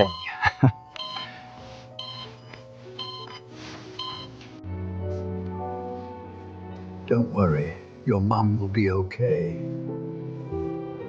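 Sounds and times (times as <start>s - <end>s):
soft background music: 0.0s - 11.0s.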